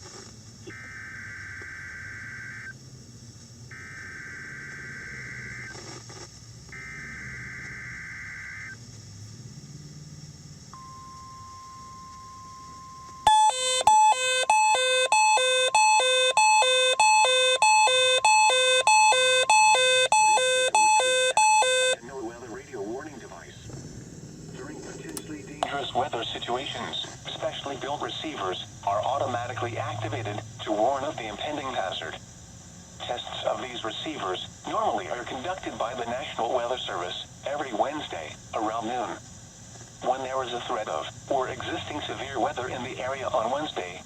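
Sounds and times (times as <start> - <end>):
raspy electronic data buzz: 0.0 - 9.3, 10.1 - 23.6, 24.5 - 44.0
faint steady warning tone: 0.1 - 44.0
rapid two-pitch alarm beeping: 0.7 - 2.8, 3.7 - 5.8, 6.8 - 8.8, 10.7 - 22.0.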